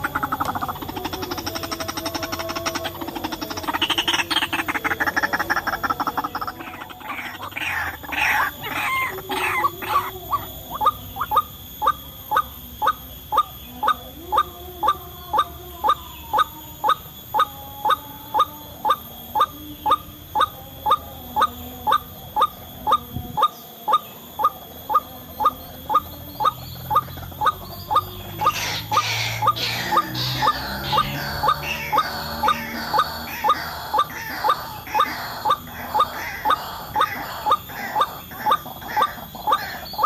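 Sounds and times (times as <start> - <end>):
waterhen calling: 0.0 - 16.0, 23.9 - 40.0.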